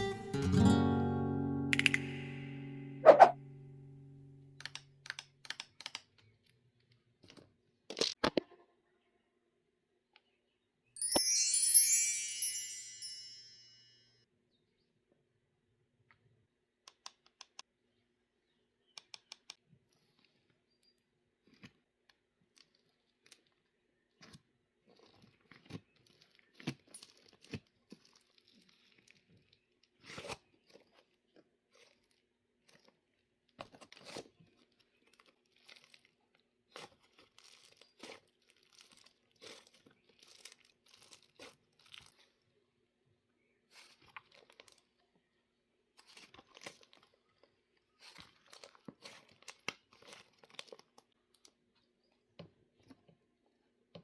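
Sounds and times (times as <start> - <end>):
bright chime: 11.0 - 14.1
slime crackling and squishing: 24.9 - 42.4, 47.9 - 51.2.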